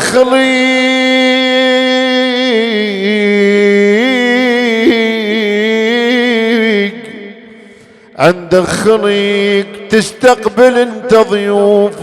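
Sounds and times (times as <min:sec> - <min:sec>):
man chanting a long sung vowel: 0:00.0 - 0:07.5.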